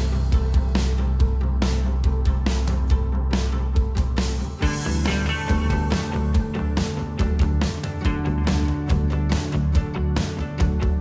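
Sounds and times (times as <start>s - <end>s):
upbeat band music: 4.1s - 10.9s.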